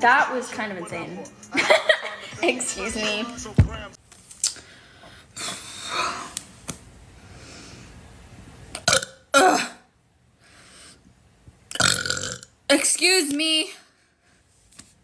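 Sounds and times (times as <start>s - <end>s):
woman burping: 8.8s - 9.9s, 11.7s - 12.5s.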